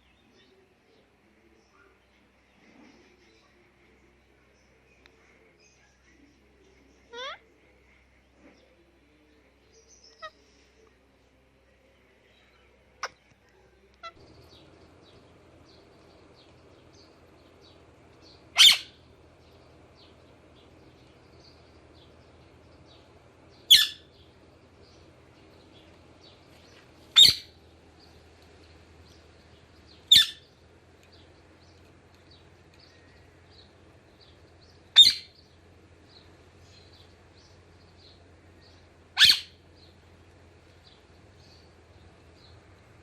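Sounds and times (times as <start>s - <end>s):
low steady hum: 0.0s - 43.0s
parakeet screeching: 7.1s - 7.4s, 18.6s - 19.0s, 23.7s - 24.1s, 27.2s - 27.5s, 30.1s - 30.5s, 35.0s - 35.3s, 39.2s - 39.6s.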